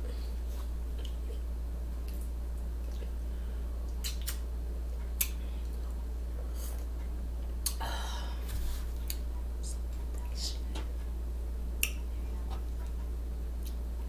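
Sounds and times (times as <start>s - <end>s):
steady low hum: 0.0s - 14.0s
mouth clicks from chewing: 3.9s - 4.4s.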